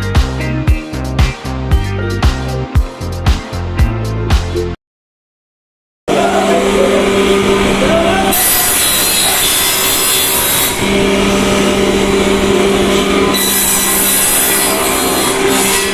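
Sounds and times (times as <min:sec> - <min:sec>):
electric saw motor hum: 0:06.3 - 0:15.9
saw blade cutting wood: 0:06.3 - 0:15.9.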